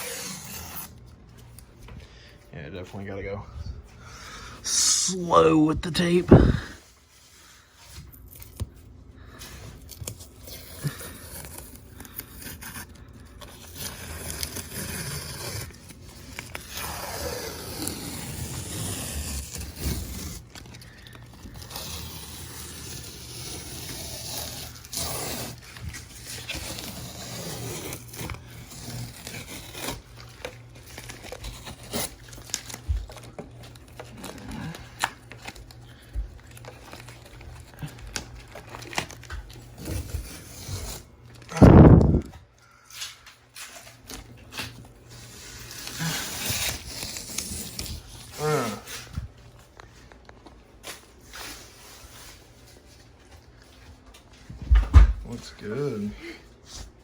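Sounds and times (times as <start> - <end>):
masking tape peeling: 0.0 - 1.0, 9.8 - 35.7, 36.4 - 42.3, 43.0 - 49.1
tape crinkling: 9.4 - 54.3.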